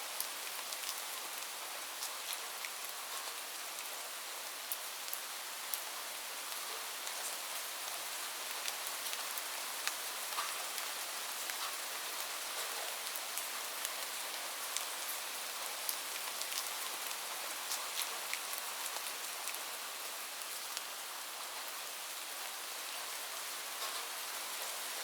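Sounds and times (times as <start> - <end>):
raindrops ticking on a surface: 0.1 - 21.0, 23.7 - 25.0.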